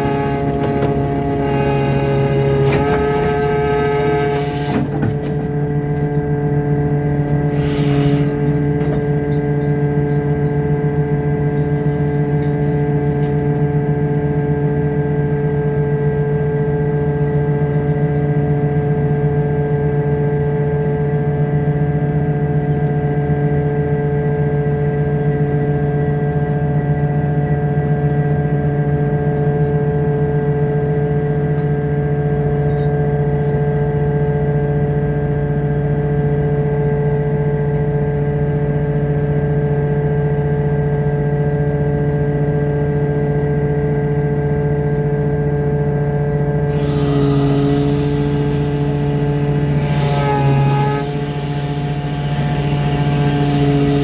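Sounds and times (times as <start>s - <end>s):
boat engine droning: 0.0s - 28.0s, 46.2s - 54.0s.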